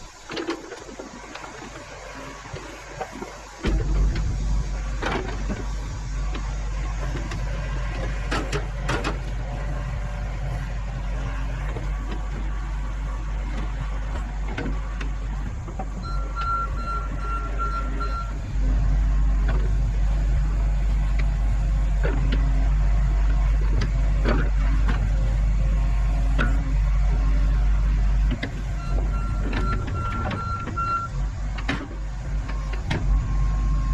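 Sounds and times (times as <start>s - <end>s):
excavator diesel engine running: 0.0s - 33.9s
warning beeps: 16.0s - 18.4s.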